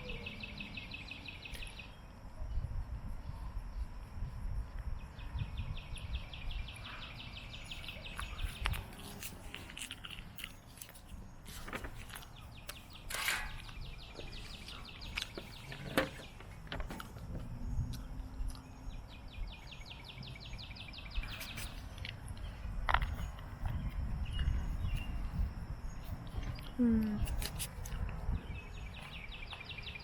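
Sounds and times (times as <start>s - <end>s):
bird chirps: 0.0s - 2.1s, 17.6s - 26.2s
insect chirping: 0.0s - 30.0s.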